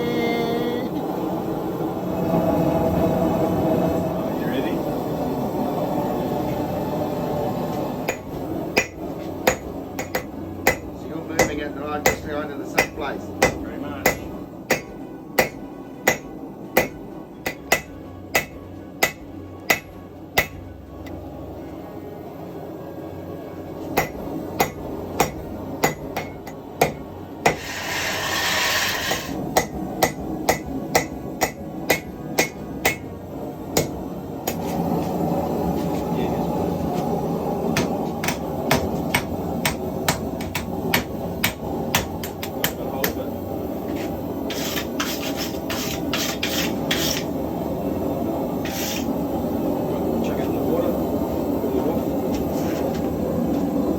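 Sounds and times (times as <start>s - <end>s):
steady rumble: 0.0s - 44.5s
hammer striking metal on anvil: 8.1s - 21.2s, 24.0s - 33.1s, 33.7s - 34.6s, 37.8s - 43.2s.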